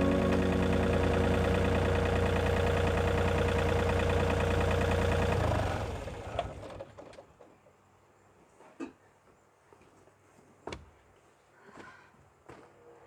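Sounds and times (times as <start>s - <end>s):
excavator diesel engine running: 0.0s - 6.6s.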